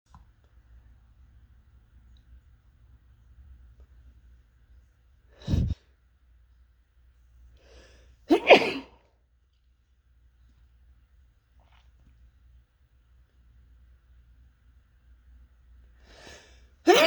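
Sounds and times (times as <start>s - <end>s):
person sneezing: 5.4s - 5.8s, 8.3s - 9.0s.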